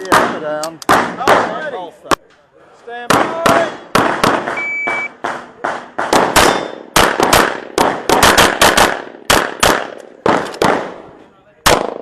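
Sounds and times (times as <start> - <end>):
shot timer beep: 4.6 - 5.1
handgun shots with echo: 6.0 - 11.0.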